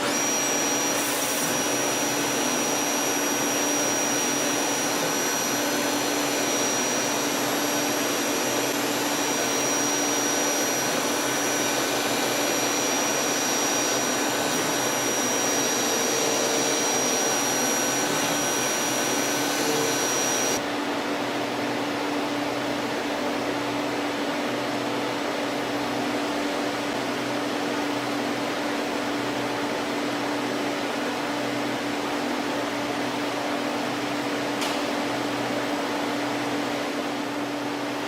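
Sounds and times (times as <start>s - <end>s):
lathe hissing: 0.0s - 20.6s
high-pitched machine whine: 0.0s - 20.7s.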